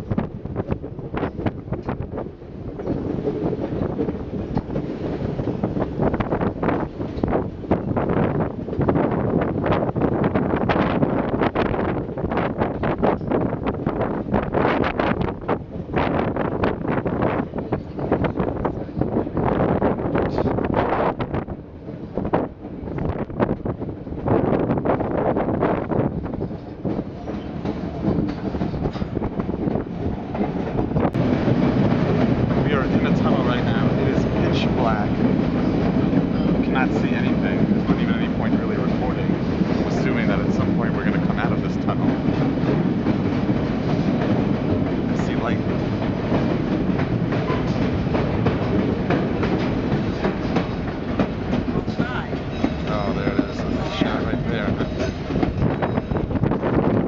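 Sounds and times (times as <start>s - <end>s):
train rumbling along track: 0.0s - 57.0s
wheels clicking over rail joints: 41.9s - 57.0s.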